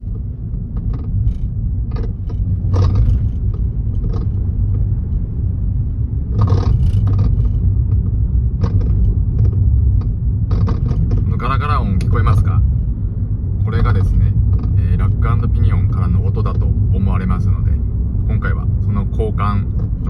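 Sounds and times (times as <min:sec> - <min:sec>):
sharp clicks and knocks: 0:00.0 - 0:05.3, 0:06.3 - 0:12.8, 0:13.7 - 0:16.8, 0:19.6 - 0:20.0
car rumbling on the move: 0:00.0 - 0:20.0.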